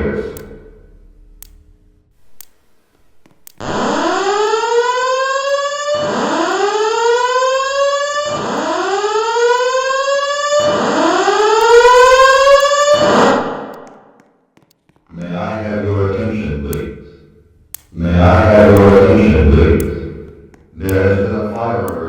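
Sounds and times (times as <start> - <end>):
spoken alarm messages: 0.0 - 0.5, 15.1 - 17.1, 17.9 - 22.0
fire alarm rising whoop: 3.6 - 13.8.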